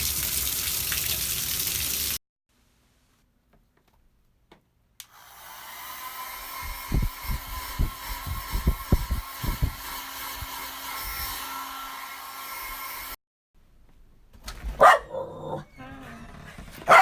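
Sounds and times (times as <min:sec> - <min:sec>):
electric motor and fan whirring: 0:05.0 - 0:13.2
wind buffeting microphone: 0:06.6 - 0:10.5.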